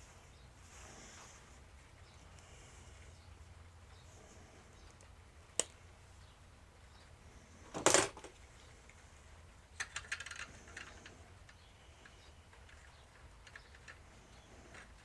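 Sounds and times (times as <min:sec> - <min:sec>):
plastic toy parts clicking: 0:07.7 - 0:08.4, 0:09.8 - 0:11.6.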